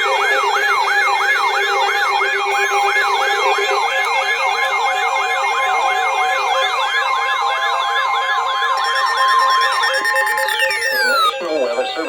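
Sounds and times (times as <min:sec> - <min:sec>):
yelping siren sweep: 0:08.8 - 0:11.3.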